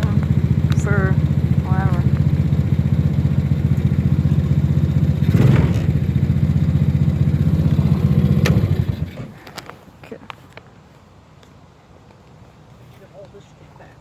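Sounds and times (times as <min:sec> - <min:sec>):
small engine running: 0:00.0 - 0:09.4.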